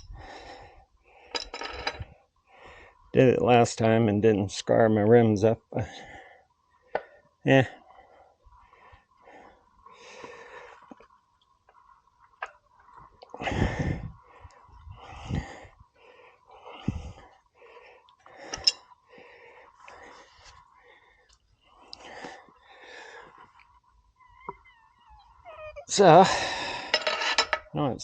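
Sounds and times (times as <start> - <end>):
man breathing hard: 0.0 - 1.8, 7.8 - 11.0, 13.3 - 23.6, 25.9 - 27.0.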